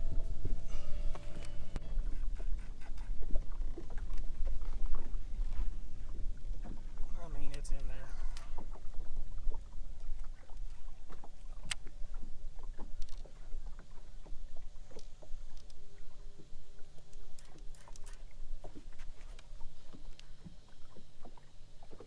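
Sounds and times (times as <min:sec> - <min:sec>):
faint steady tone: 0:00.0 - 0:03.6
low steady rumble: 0:00.0 - 0:22.0.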